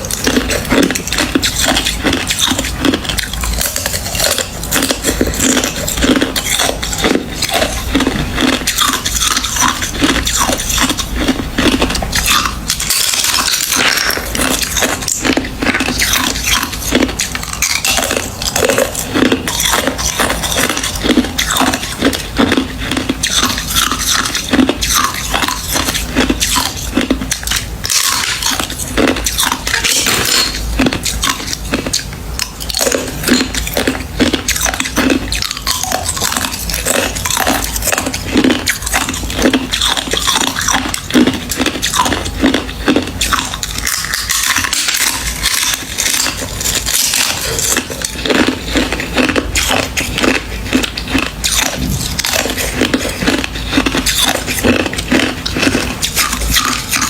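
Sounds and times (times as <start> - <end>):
ice crunching while chewed: 0.0 - 57.0.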